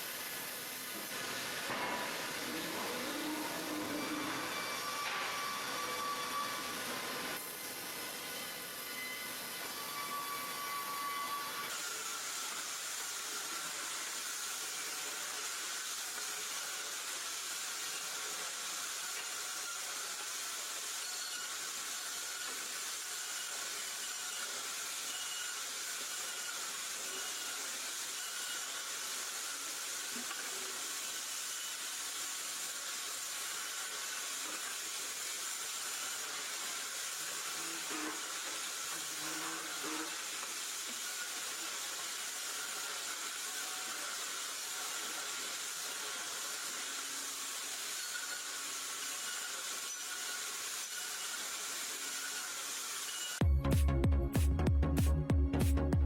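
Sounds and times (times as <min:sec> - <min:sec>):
steady hiss: 0:00.0 - 0:53.4.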